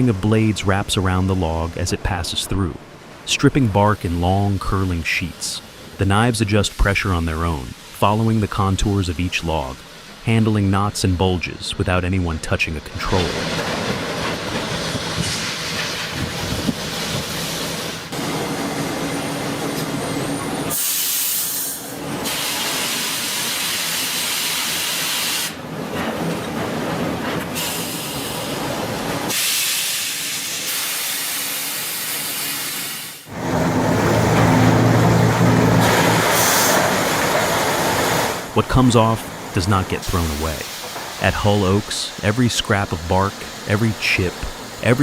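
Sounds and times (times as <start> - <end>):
strong hissing: 33.2 - 45.0
sawmill machinery running: 33.3 - 45.0.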